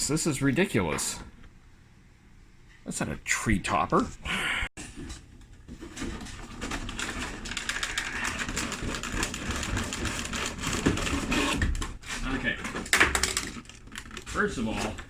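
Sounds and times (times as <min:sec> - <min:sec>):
packaging crinkling and rustling: 0:05.1 - 0:15.0.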